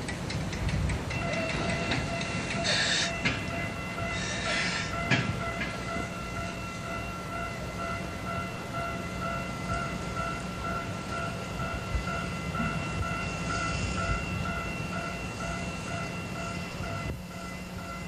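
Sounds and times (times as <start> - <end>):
pulsing high whine: 0.0 - 18.0
steam locomotive hiss: 0.0 - 18.0.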